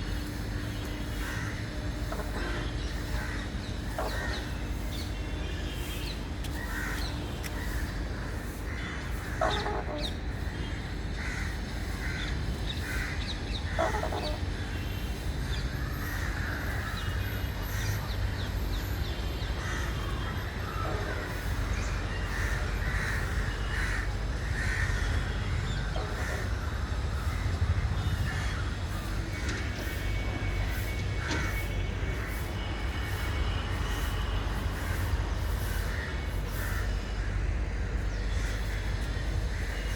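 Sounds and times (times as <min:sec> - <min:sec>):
birds calling and chirping: 0:00.0 - 0:39.9
steady low rumble: 0:21.8 - 0:33.1.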